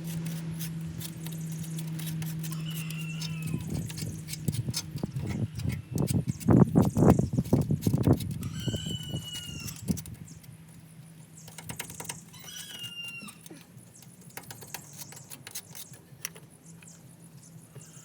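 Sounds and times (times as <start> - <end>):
steady low hum: 0.0 - 12.4
high animal call: 8.4 - 9.9, 12.3 - 13.6.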